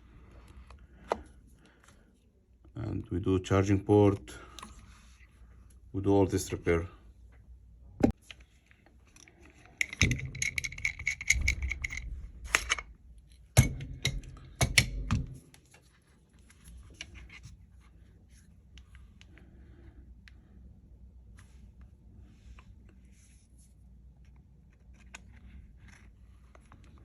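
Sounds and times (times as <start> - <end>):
metal tools clicking and tapping: 9.2 - 12.9, 13.6 - 15.4.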